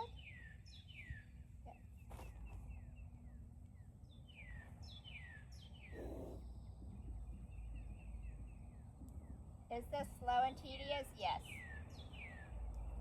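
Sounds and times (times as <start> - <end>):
birds chirping: 0.0 - 9.4.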